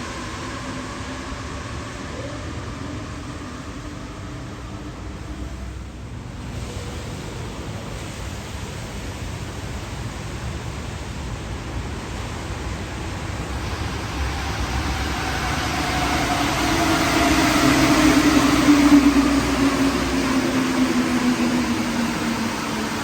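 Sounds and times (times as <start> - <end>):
rising motor whine: 0.0 - 6.6, 13.1 - 23.0
metro train running: 0.0 - 23.0
rain hissing: 0.0 - 23.0.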